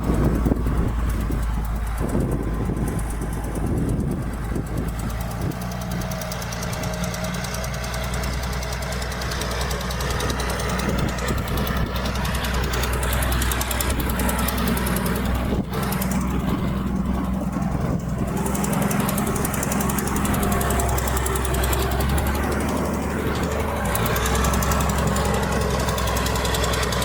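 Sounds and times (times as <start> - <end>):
heavy machinery diesel engine: 0.0 - 27.0.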